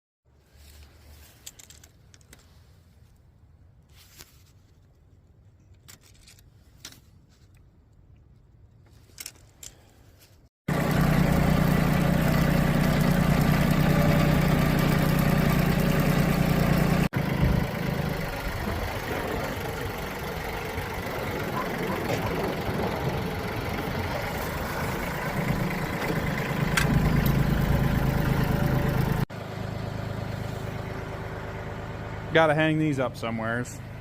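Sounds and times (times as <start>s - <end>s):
vehicle engine idling: 10.7s - 34.0s.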